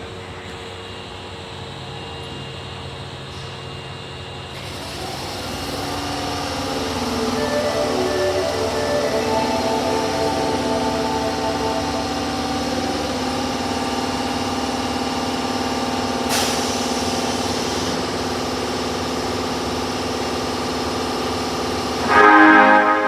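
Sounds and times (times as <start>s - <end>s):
train equipment humming: 4.6s - 15.7s.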